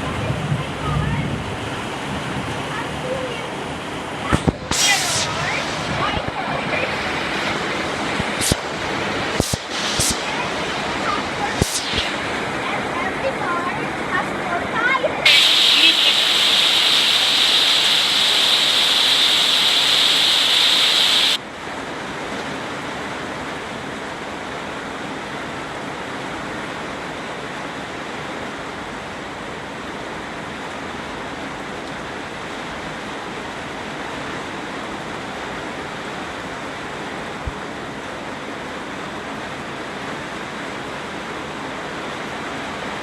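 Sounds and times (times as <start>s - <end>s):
rain hiss: 3.3s - 13.4s, 15.2s - 21.4s
louder bright hiss: 4.3s - 13.4s, 15.2s - 21.4s.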